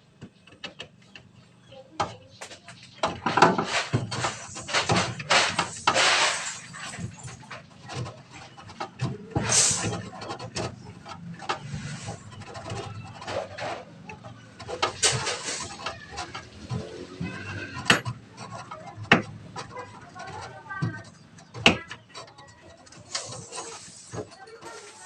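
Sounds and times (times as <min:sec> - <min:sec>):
knocks and clattering: 0:00.0 - 0:25.0
scraping rush: 0:03.2 - 0:22.3.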